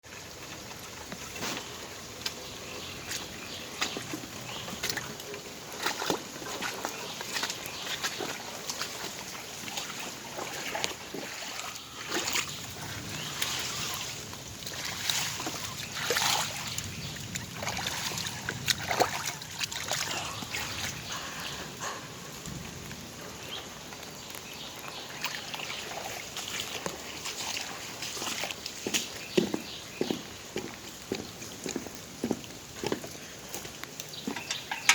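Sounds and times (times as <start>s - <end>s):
steady wash of water: 0.1s - 23.4s
water sloshing and splashing: 0.1s - 34.9s.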